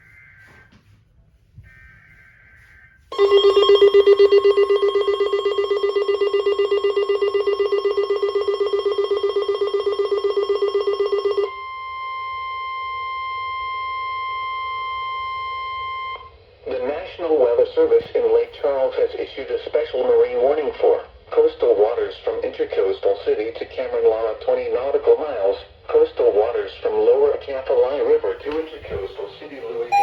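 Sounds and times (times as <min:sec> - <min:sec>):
steady warning tone: 0:01.6 - 0:11.7, 0:28.5 - 0:30.0
alarm ringing in rapid pulse: 0:02.0 - 0:11.5.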